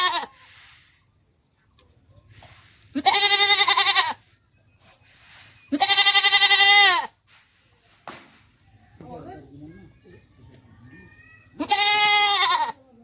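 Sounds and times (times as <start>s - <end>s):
goat bleating: 0.0s - 0.4s, 2.9s - 4.2s, 5.7s - 7.2s, 11.4s - 12.9s.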